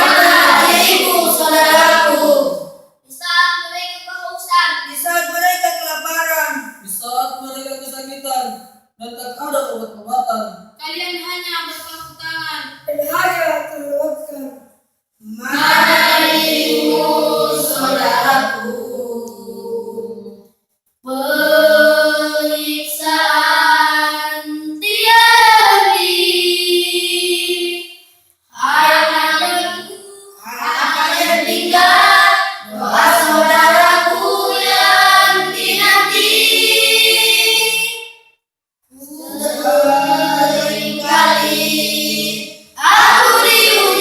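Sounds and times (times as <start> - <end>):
choir singing: 0.0 - 2.7, 15.2 - 20.4, 21.1 - 27.9, 28.6 - 38.0, 39.0 - 44.0.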